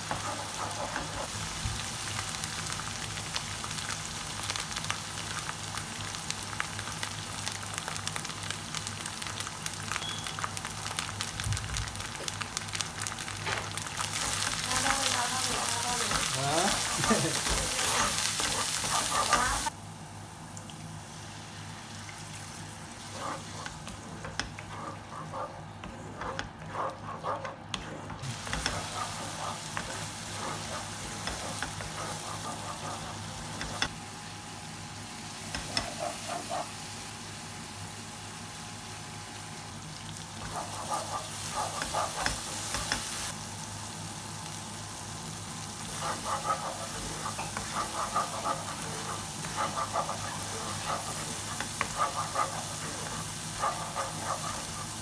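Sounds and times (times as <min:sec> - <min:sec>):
curry sizzling in a pan: 0:00.0 - 0:26.3, 0:28.2 - 0:55.0
stirring scrapes and clicks: 0:23.1 - 0:33.9, 0:46.0 - 0:55.0.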